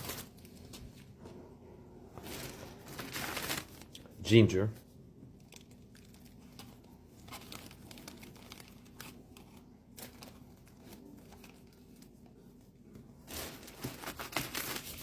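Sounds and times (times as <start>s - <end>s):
plastic bag crinkling: 0.0s - 1.0s, 2.2s - 4.1s, 5.3s - 15.0s
light clicks of groceries: 5.3s - 15.0s.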